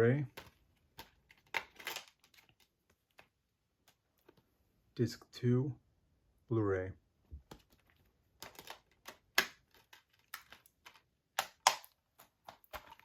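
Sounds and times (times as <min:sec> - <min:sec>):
plastic case clicking and snapping: 0:00.3 - 0:02.6, 0:08.4 - 0:13.0.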